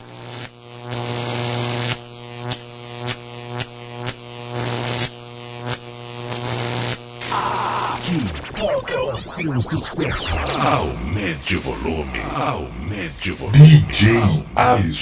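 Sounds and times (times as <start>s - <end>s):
buzzing synth drone: 7.2s - 11.4s.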